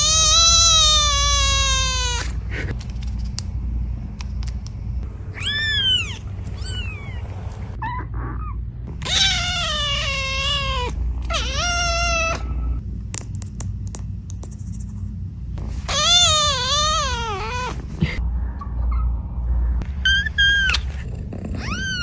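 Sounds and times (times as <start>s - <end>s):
kitten meowing: 5.3s - 8.1s, 9.0s - 12.6s, 15.9s - 18.2s, 20.1s - 22.0s.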